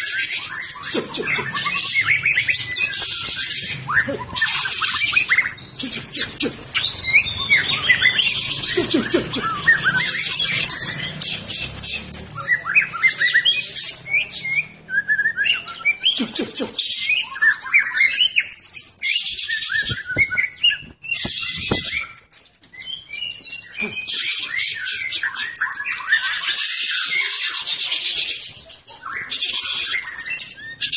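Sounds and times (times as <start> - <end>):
bird singing whistled notes: 0.0 - 8.7, 9.4 - 16.2, 16.9 - 30.9
harsh rattling bird notes: 18.5 - 22.3.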